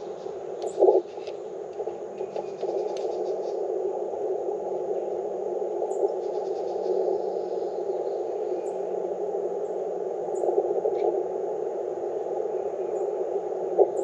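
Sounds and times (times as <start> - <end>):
faint ticks: 0.0 - 3.6, 4.2 - 5.1, 10.4 - 11.2
radio receiver hiss: 0.0 - 14.0.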